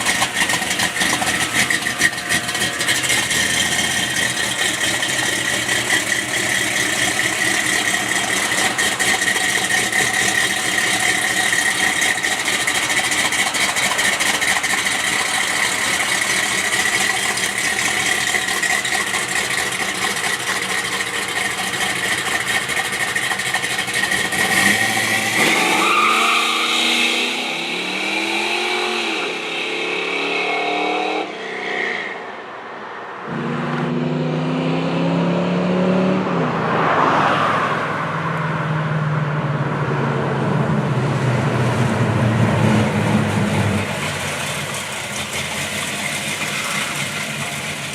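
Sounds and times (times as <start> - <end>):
car engine running: 0.0 - 26.1, 40.2 - 47.9.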